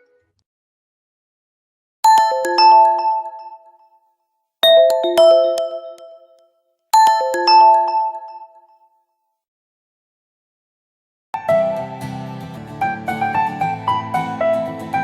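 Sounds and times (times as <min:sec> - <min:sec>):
bell-like phone ringtone: 0:02.0 - 0:09.0.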